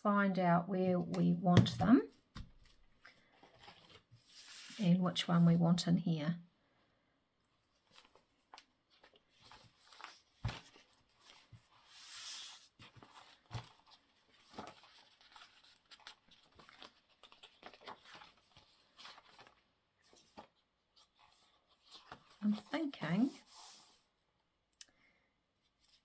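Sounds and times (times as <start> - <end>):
paper rustling: 1.6 - 4.8, 7.7 - 23.7.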